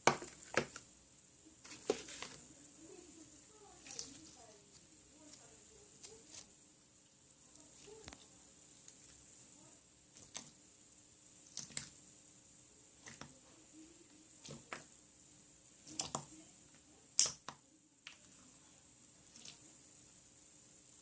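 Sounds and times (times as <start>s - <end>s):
slime popping and clicking: 11.5s - 11.9s, 15.9s - 16.3s, 17.2s - 17.6s.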